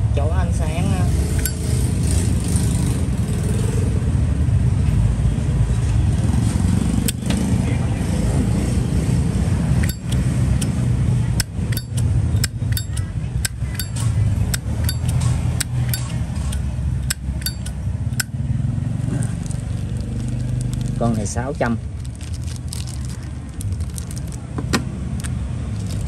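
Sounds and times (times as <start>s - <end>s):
steady low rumble: 7.1s - 26.0s.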